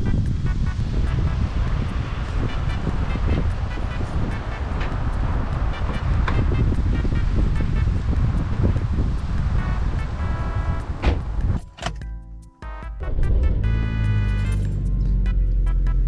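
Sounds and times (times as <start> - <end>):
wind buffeting microphone: 0.0 - 11.8
car engine and road rumble: 0.0 - 16.0.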